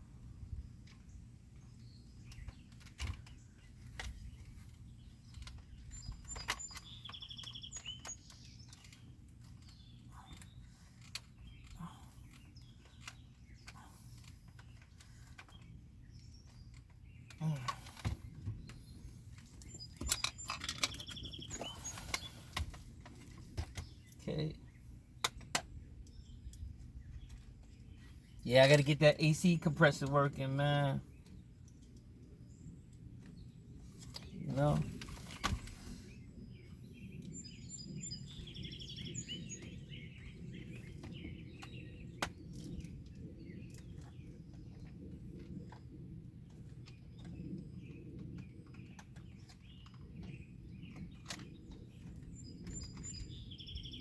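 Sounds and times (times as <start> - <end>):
birds chirping: 0.0 - 54.0.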